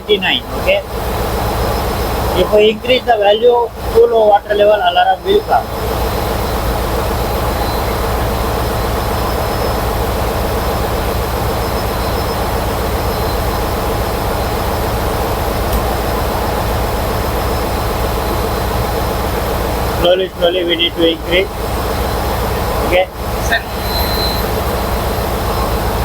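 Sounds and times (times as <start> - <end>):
engine-room machinery drone: 0.0 - 26.0.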